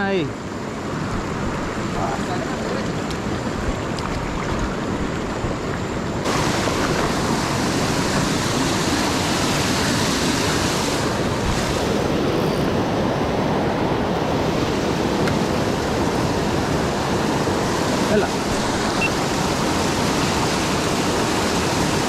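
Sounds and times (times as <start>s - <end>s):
river water rushing: 0.0s - 22.0s.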